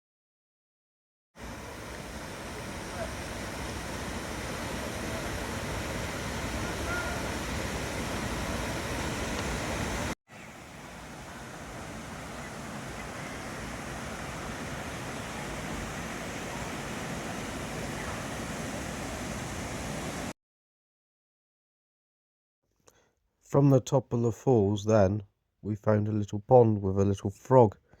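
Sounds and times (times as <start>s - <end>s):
waterfall rushing: 1.4s - 20.3s.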